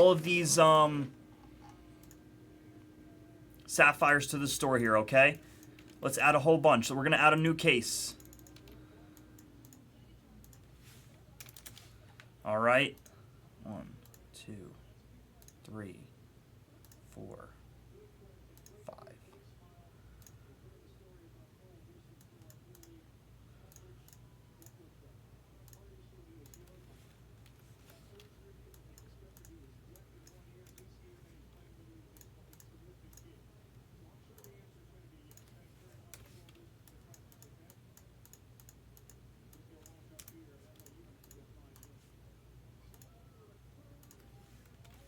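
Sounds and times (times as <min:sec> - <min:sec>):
steady low hum: 0:00.0 - 0:45.0
keyboard typing and mouse clicks: 0:01.4 - 0:02.4, 0:08.1 - 0:12.3, 0:22.2 - 0:23.0, 0:25.6 - 0:26.8, 0:27.4 - 0:30.9, 0:31.6 - 0:33.4, 0:34.4 - 0:34.6, 0:35.2 - 0:42.1, 0:42.8 - 0:43.2, 0:44.0 - 0:45.0.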